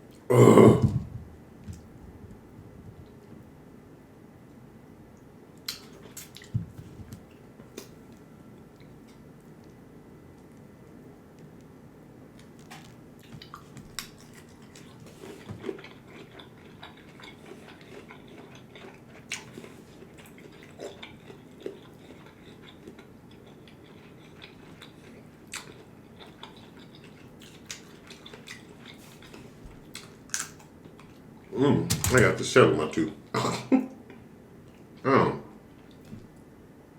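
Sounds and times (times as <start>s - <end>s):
faint steady hum: 0.0s - 36.9s
chewing seafood: 5.6s - 10.7s, 12.3s - 31.5s.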